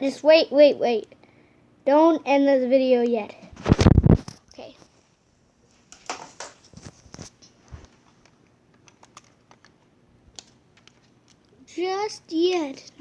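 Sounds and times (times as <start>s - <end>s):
objects being handled clicking: 5.9s - 11.6s.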